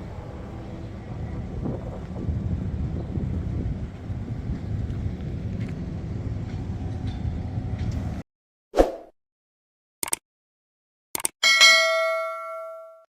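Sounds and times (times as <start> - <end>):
harvester engine rumbling: 0.0 - 8.2
quick clicks: 10.0 - 10.2, 11.2 - 11.4.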